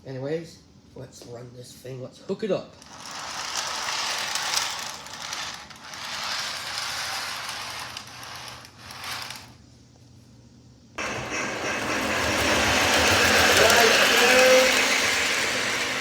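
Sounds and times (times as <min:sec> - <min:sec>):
model train cars clattering: 0:02.8 - 0:09.6, 0:11.0 - 0:16.0
train running with low hum: 0:11.0 - 0:16.0.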